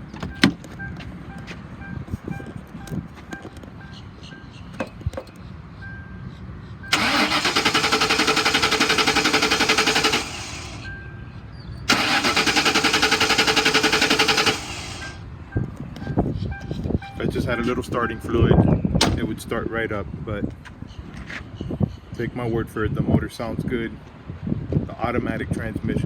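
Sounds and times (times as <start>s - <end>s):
car engine cranking: 6.9s - 10.9s, 11.8s - 15.2s.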